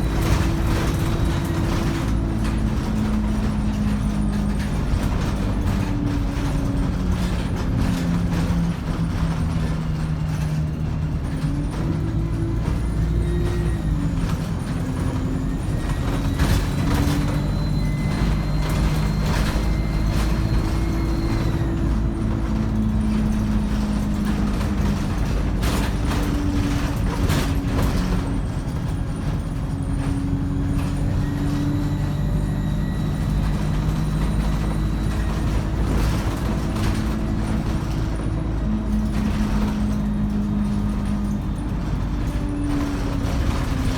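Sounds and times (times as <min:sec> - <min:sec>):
bus body knocks and rattles: 0:00.0 - 0:43.9
bus diesel engine: 0:00.0 - 0:43.9
high turbo whine: 0:11.6 - 0:43.9.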